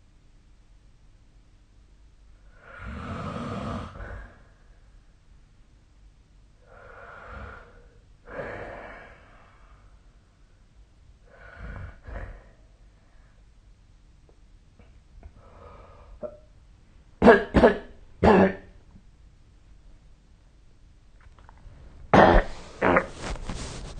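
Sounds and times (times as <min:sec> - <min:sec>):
person breathing noisily in sleep: 0:02.5 - 0:04.9, 0:06.6 - 0:10.1, 0:11.2 - 0:13.4, 0:15.3 - 0:16.2
person coughing: 0:17.2 - 0:18.8, 0:22.2 - 0:23.2.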